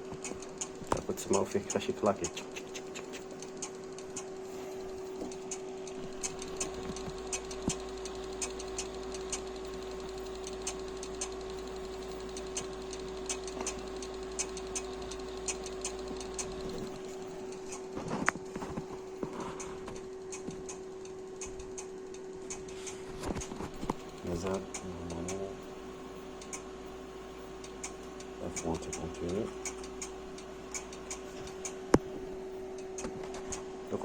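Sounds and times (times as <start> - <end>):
hard disk clicking: 0.0 - 34.0
steady hum: 0.0 - 34.0.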